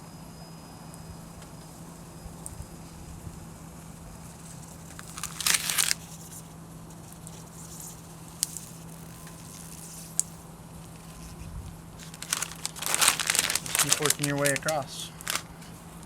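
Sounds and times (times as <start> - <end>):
steady low hum: 0.0 - 16.0
tape peeling off with crackling tear: 4.3 - 16.0.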